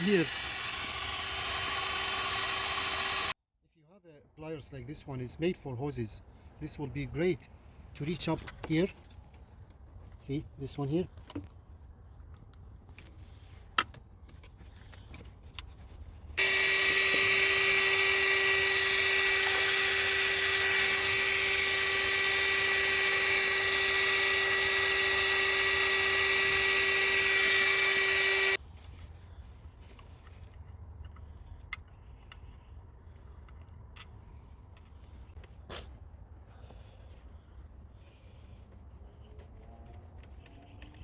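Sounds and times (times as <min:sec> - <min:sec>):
heat gun fan whining: 0:00.0 - 0:03.4, 0:16.4 - 0:28.6.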